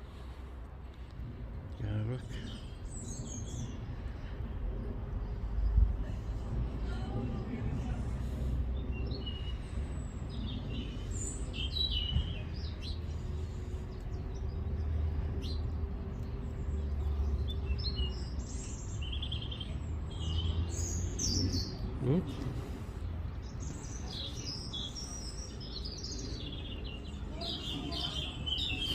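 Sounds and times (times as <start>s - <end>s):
small birds chirping: 0.0s - 28.9s.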